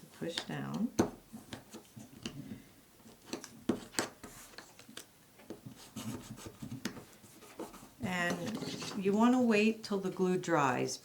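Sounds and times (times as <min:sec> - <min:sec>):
paper rustling: 0:03.1 - 0:09.3.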